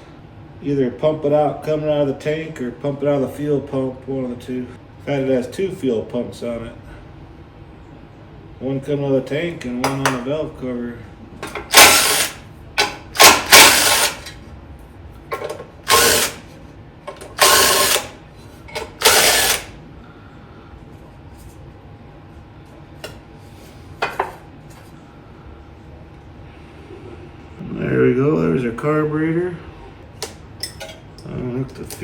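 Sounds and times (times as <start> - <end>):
power drill running bolts out: 11.4 - 14.4, 15.8 - 16.4, 17.3 - 19.7.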